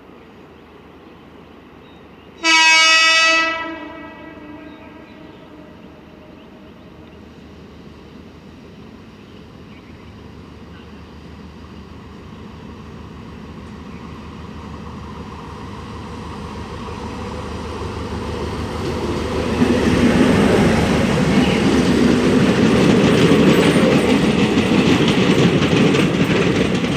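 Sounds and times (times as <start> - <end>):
train rumble passing: 0.1 - 26.9
train wheels clattering on rails: 13.2 - 26.9.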